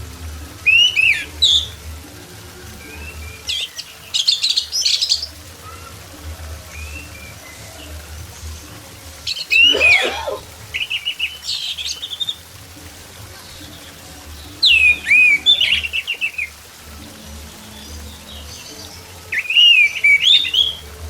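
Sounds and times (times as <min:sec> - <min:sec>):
thrush singing whistles: 0:09.3 - 0:12.4, 0:14.6 - 0:16.5, 0:19.3 - 0:20.8.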